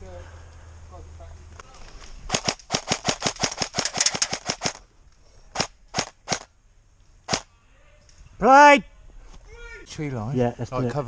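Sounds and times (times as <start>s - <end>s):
airsoft gun firing: 2.3s - 4.8s, 5.6s - 6.5s, 7.3s - 7.5s.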